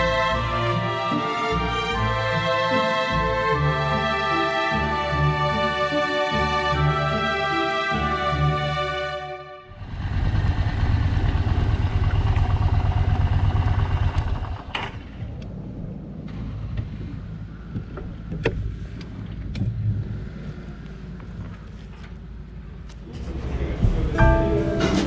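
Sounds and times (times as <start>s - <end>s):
motorcycle engine running: 9.8s - 14.7s.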